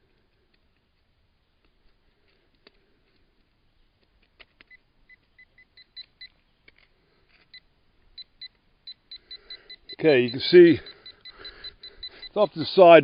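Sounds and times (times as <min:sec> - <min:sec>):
metal detector beeping: 0:04.4 - 0:13.0.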